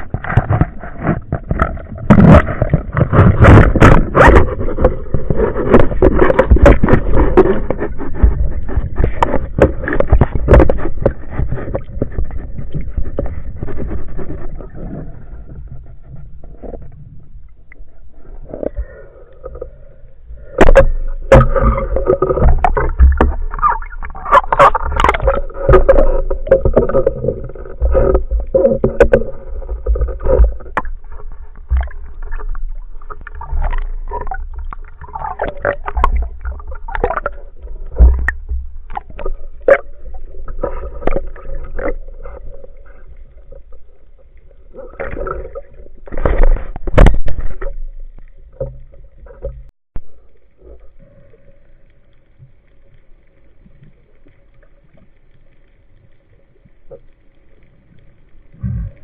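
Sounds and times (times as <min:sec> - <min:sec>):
water knocking and slapping: 0:00.0 - 0:14.6, 0:20.6 - 0:43.6, 0:44.9 - 0:47.8.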